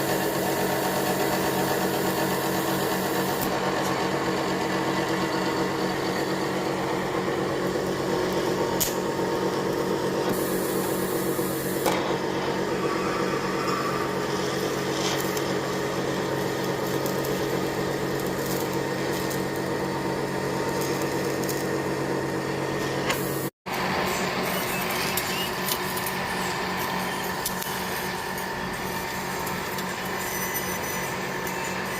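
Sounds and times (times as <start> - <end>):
loud hiss: 0.0 - 3.5, 10.2 - 19.1
welding arc crackle: 0.0 - 31.9
welding machine hum: 0.0 - 31.9.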